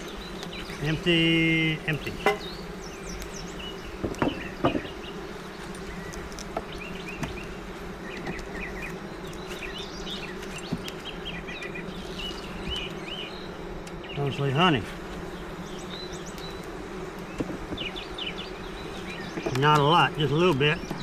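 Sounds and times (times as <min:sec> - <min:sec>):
honeybees buzzing: 0:00.0 - 0:21.0
sharp knocks: 0:02.2 - 0:02.5, 0:04.0 - 0:04.9.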